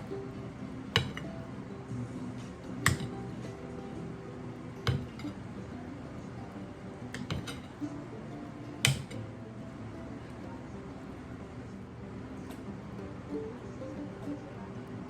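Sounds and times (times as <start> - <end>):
soft background music: 0.0 - 15.0
dishes and cutlery clinking: 0.9 - 1.4, 2.8 - 3.6, 4.8 - 5.4, 7.1 - 7.8, 8.8 - 9.2.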